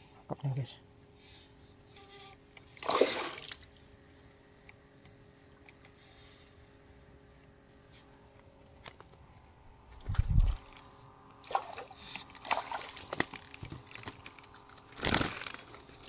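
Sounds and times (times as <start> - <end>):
water sloshing and splashing: 2.6 - 3.8, 11.4 - 16.0.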